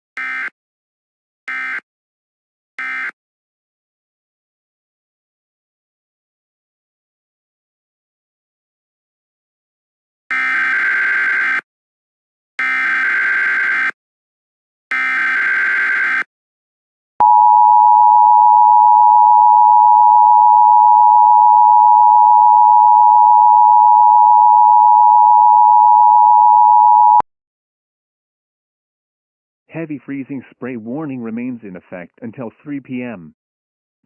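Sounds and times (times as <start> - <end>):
two-tone attention signal: 17.2 - 27.2.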